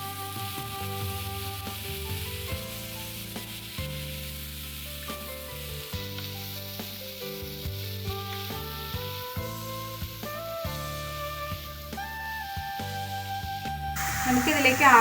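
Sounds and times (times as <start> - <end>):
background music: 0.0 - 4.6, 5.2 - 15.0
chicken sizzling in a frying pan: 0.0 - 15.0.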